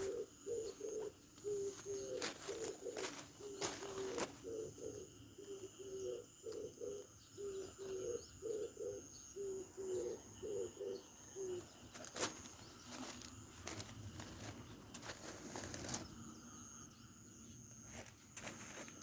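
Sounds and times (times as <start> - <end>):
dove cooing: 0.0 - 13.8.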